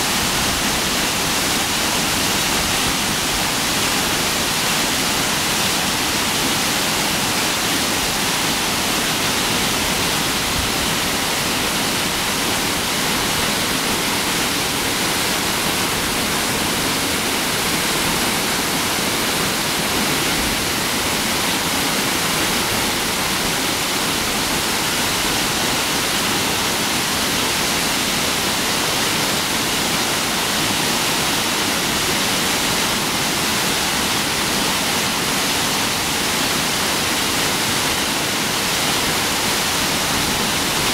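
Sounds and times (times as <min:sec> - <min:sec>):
stream rushing over rocks: 0:00.0 - 0:40.9.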